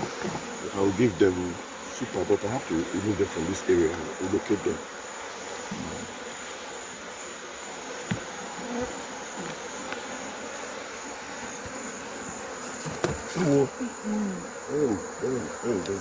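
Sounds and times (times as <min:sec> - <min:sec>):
bees buzzing: 0:00.0 - 0:16.0
faint clicks: 0:15.8 - 0:16.0.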